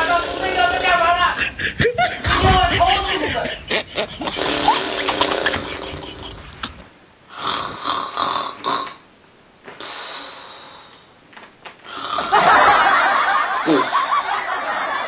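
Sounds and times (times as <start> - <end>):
person snoring loudly: 0.0 - 1.2, 4.2 - 6.7, 7.3 - 9.0, 11.8 - 12.5, 13.6 - 14.2.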